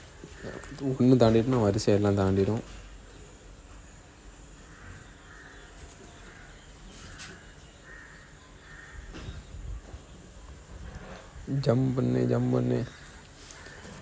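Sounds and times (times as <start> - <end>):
crows cawing: 4.6 - 9.4.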